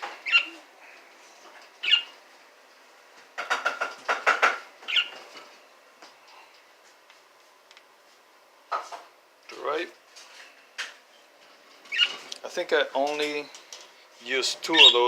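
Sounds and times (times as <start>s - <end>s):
parakeets chirping and squawking: 0.0s - 0.7s, 1.6s - 2.2s, 3.4s - 5.5s, 11.8s - 12.3s, 14.6s - 15.0s.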